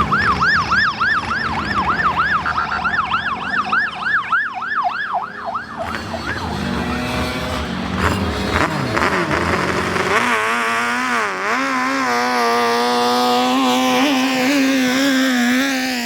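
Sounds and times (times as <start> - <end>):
speedboat engine at high revs: 5.7 - 16.0.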